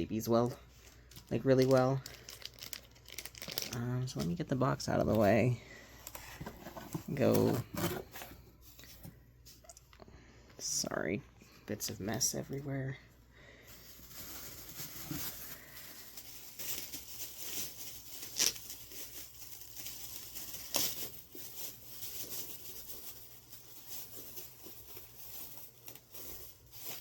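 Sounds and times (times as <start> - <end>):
packaging rustling and tearing: 0.7 - 4.4, 13.7 - 27.0
sharp packaging crackles: 0.9 - 4.4, 13.7 - 27.0.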